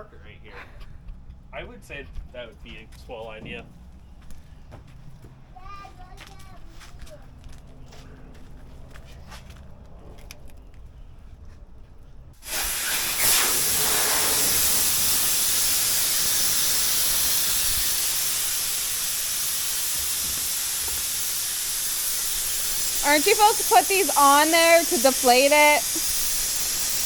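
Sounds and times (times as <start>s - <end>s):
air hissing out of a tire: 12.4s - 27.0s.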